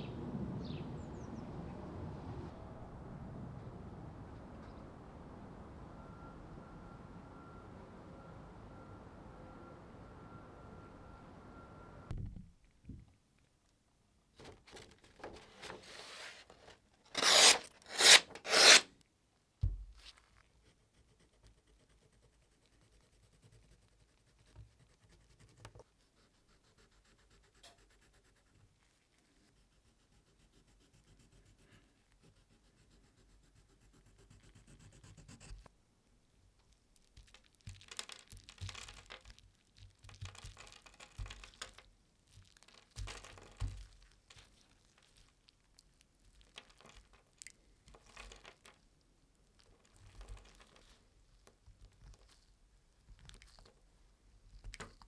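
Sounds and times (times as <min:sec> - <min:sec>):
knife blade cutting material: 0:17.2 - 0:18.9.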